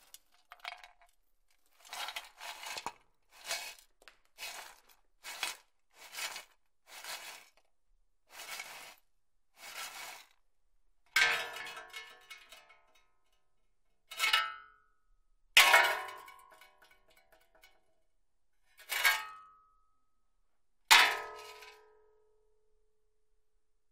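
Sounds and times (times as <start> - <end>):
shovel scraping ash: 1.7 - 7.6, 8.3 - 9.0, 9.6 - 10.3.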